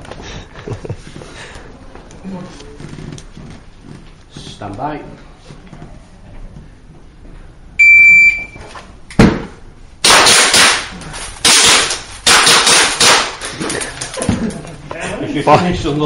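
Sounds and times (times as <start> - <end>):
shot timer beep: 7.8 - 8.6.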